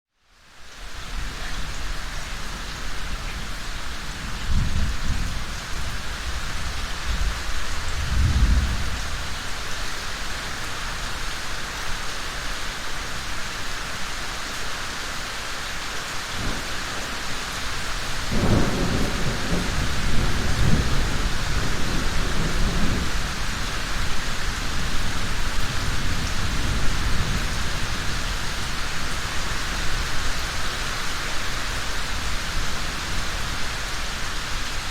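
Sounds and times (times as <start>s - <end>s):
steady rain falling: 0.1s - 34.9s
thunder rumbling: 3.5s - 9.4s, 16.4s - 28.8s.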